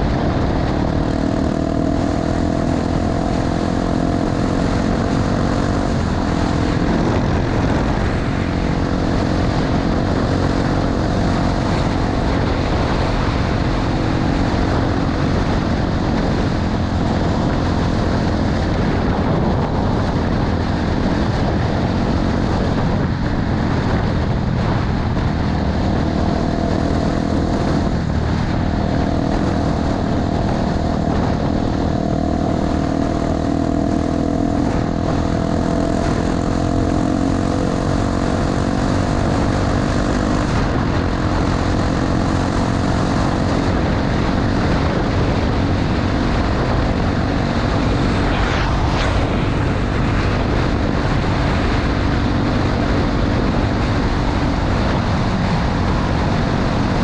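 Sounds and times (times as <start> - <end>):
motorcycle engine running: 0.0 - 57.0
road noise on gravel: 0.0 - 57.0
wind rushing: 0.0 - 57.0.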